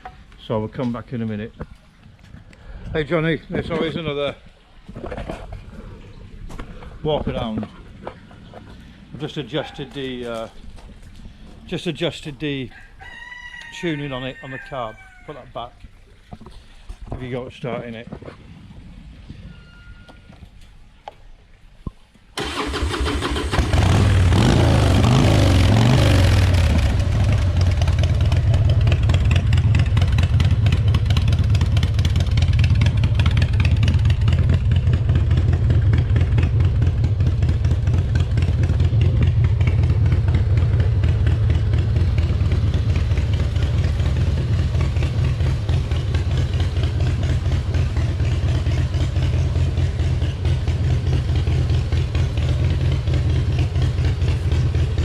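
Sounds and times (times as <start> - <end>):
motorcycle starter cranking: 22.4 - 24.5
motorcycle engine revving and idling: 22.4 - 55.0.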